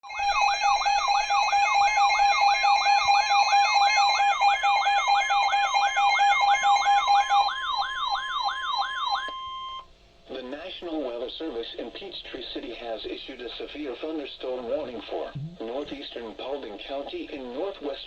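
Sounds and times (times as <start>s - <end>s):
steady siren tone: 0.0s - 9.8s
electronic siren warbling: 15.3s - 15.7s.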